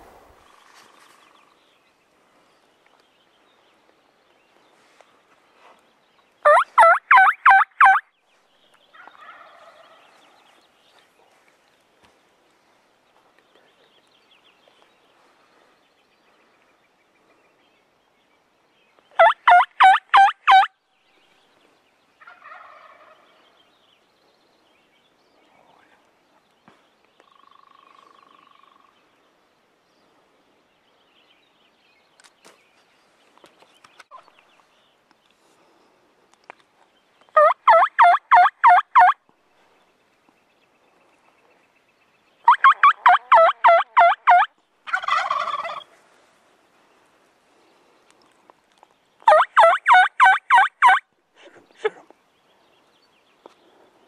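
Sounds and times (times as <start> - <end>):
turkey gobbling: 6.4 - 8.0, 19.2 - 20.7, 22.2 - 23.2, 37.4 - 39.2, 42.4 - 45.9, 49.3 - 51.0
distant turkey gobbling: 6.5 - 8.0, 37.4 - 39.2, 42.4 - 45.9, 49.3 - 51.0.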